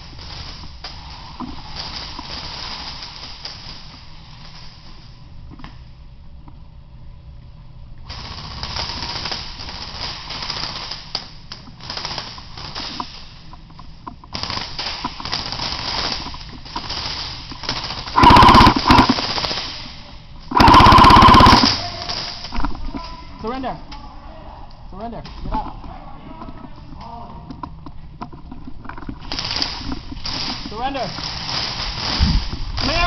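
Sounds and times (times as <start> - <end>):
airsoft guns firing full-auto: 14.4 - 19.8, 20.5 - 22.6.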